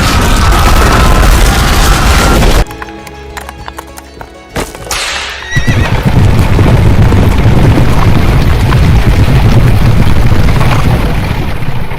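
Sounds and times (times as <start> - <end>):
horse whinnying: 5.3 - 6.0
dense low rumble: 5.4 - 11.9.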